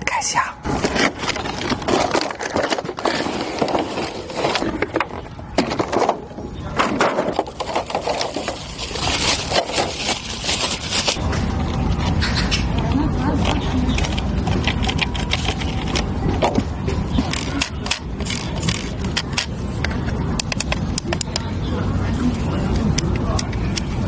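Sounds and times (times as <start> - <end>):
box scraping and rustling: 0.7 - 11.2.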